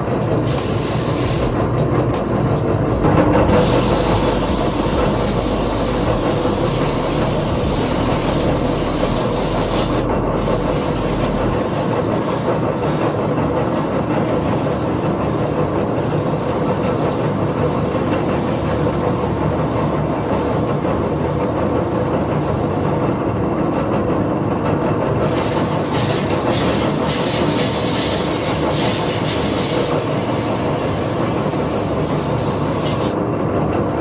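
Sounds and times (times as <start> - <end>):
power tool sanding wood: 0.4 - 1.7, 2.9 - 19.5, 25.2 - 33.2.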